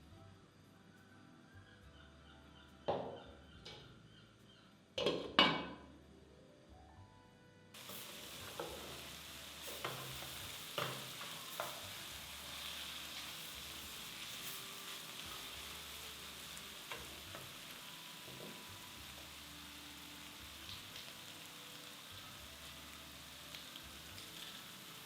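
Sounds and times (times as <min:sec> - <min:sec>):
food sizzling in a frying pan: 0:07.8 - 0:25.0.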